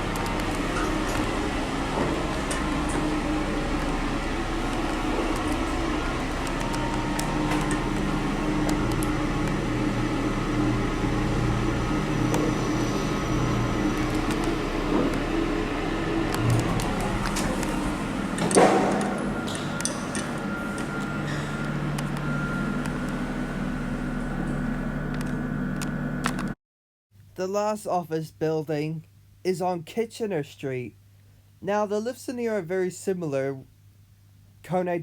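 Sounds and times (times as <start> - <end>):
fan-like noise: 0.0 - 26.6
lift car hum: 0.0 - 26.6.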